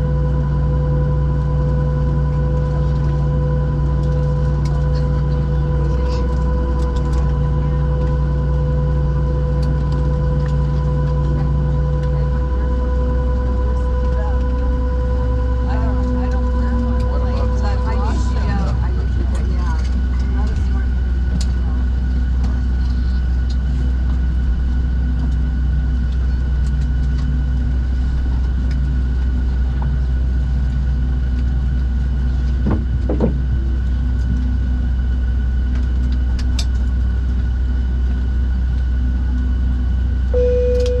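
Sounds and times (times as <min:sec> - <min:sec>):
aircraft cabin rumble: 0:00.0 - 0:41.0
high-pitched hum: 0:00.0 - 0:41.0
brief single tone: 0:40.3 - 0:41.0.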